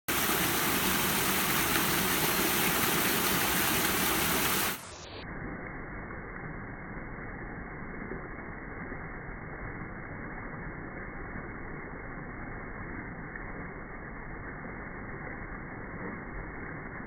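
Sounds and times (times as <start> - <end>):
waterfall and rain rushing: 0.0 - 5.2.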